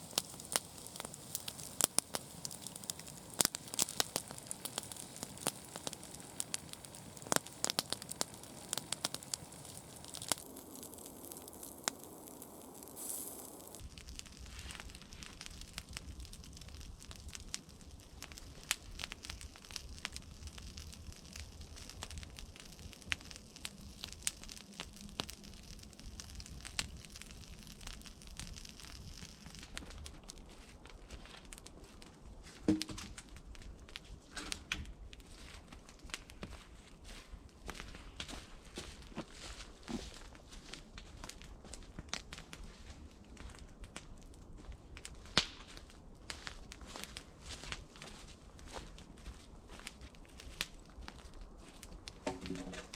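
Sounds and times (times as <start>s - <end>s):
fire hissing: 0.0s - 30.6s
burning wood popping: 0.0s - 52.9s
campfire crackling: 0.0s - 52.9s.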